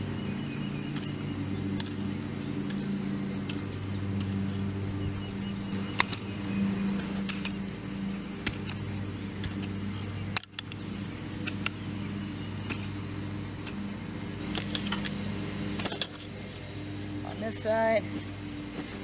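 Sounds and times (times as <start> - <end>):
steady low hum: 0.0 - 19.0
hoe chopping into soil: 0.9 - 5.0, 8.4 - 10.8, 11.4 - 11.9, 12.6 - 13.0, 14.4 - 15.2, 15.8 - 16.3.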